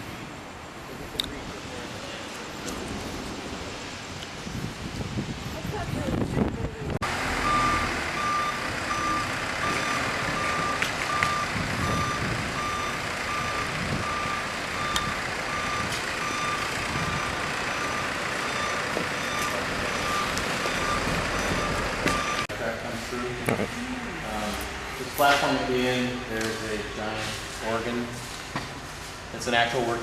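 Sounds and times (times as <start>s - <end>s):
machinery and site noise: 0.0s - 30.0s
backup alarm beeping: 7.4s - 22.5s.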